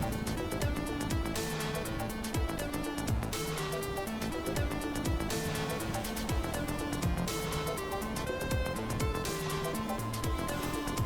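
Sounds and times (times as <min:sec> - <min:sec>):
kick drum beat: 0:00.0 - 0:01.5, 0:02.4 - 0:03.4, 0:04.5 - 0:05.4, 0:06.3 - 0:07.5, 0:08.5 - 0:09.2, 0:10.2 - 0:10.8
electronic music: 0:00.0 - 0:11.0.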